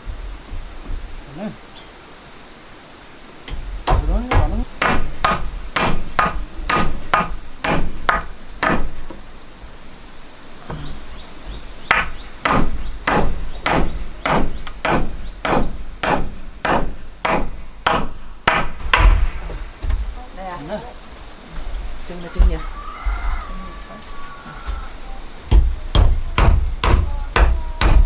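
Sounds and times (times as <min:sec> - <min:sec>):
hammer striking nails into wood: 0:03.5 - 0:09.2, 0:11.9 - 0:20.0, 0:25.5 - 0:28.0.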